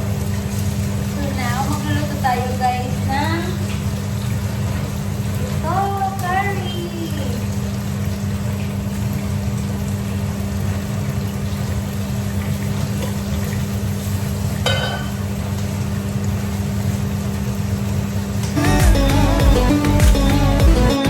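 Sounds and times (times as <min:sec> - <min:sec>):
food sizzling in a pan: 0:00.0 - 0:09.4, 0:11.5 - 0:18.8
utensil sound: 0:18.6 - 0:21.0.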